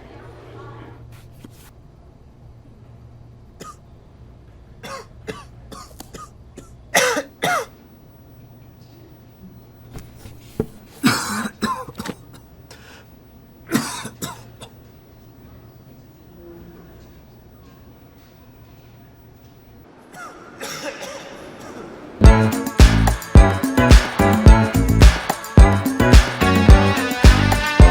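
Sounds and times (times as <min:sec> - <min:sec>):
person clearing throat: 0:03.6 - 0:03.8, 0:04.8 - 0:07.8, 0:11.0 - 0:12.5, 0:13.7 - 0:14.8, 0:20.1 - 0:22.0
person coughing: 0:03.6 - 0:03.8, 0:04.8 - 0:07.8, 0:11.0 - 0:12.9, 0:13.7 - 0:14.8, 0:20.1 - 0:22.0.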